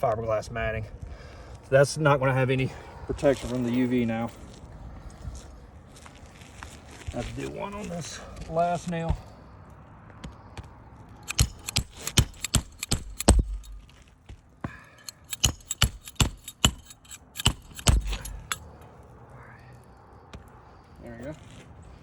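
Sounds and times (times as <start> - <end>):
hammer tapping on metal tool: 11.3 - 13.9, 15.0 - 18.6.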